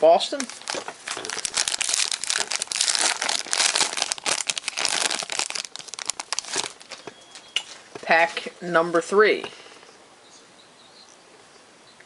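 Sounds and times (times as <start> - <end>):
wrapper tearing open: 0.4 - 7.0
card pack wrapper crinkling: 0.4 - 7.1.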